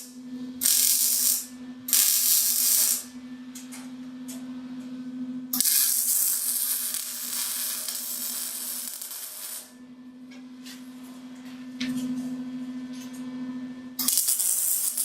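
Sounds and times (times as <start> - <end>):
welding arc crackling: 0.0 - 3.1, 5.6 - 9.7, 14.0 - 15.0
welding equipment hum: 0.0 - 11.2, 14.0 - 15.0.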